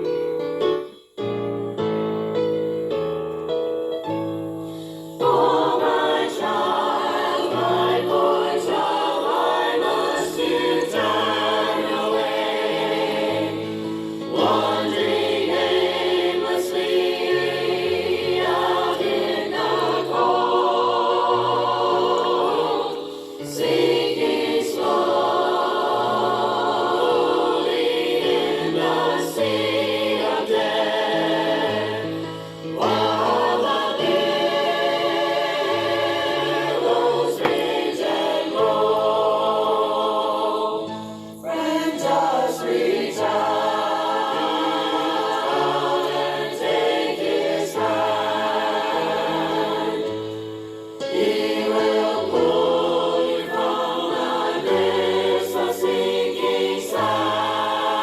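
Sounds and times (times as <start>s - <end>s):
group singing gospel song: 5.2s - 58.0s.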